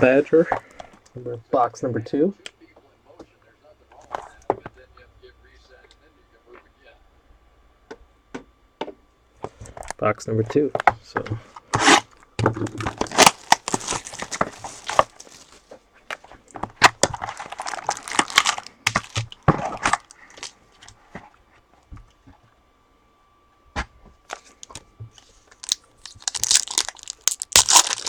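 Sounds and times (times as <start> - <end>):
packaging crinkling and tearing: 11.8 - 15.7, 16.6 - 20.6, 25.5 - 28.0.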